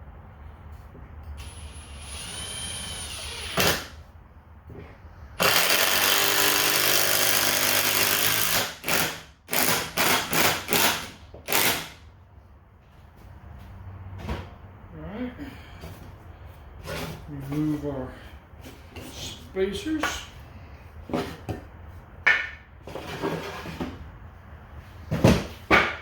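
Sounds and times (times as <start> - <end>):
drill driving screw into wood: 1.4 - 4.0, 5.4 - 12.0.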